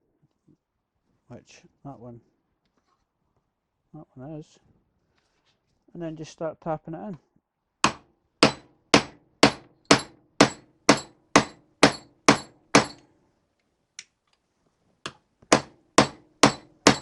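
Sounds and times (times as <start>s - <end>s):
hammer striking metal tool: 7.8s - 13.0s, 15.5s - 17.0s.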